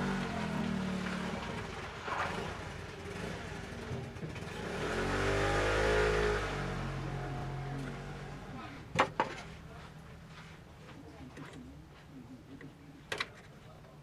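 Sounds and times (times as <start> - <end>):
vehicle engine revving: 0.0 - 8.7.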